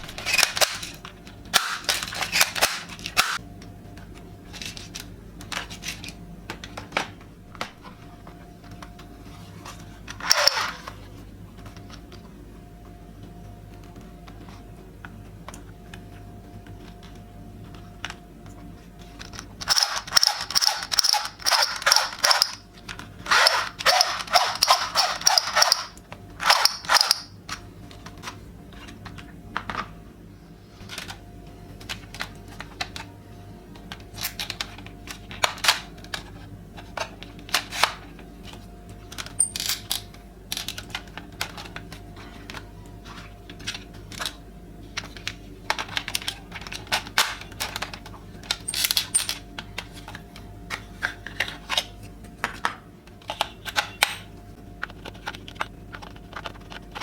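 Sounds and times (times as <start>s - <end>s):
toy gun rapid-fire sound: 19.7s - 22.6s, 23.3s - 27.3s.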